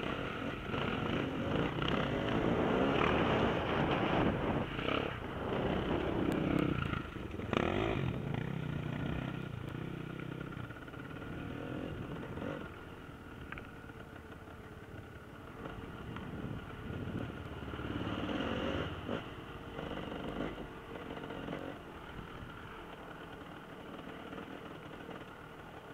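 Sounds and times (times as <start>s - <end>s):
motorcycle engines revving: 0.0s - 25.9s.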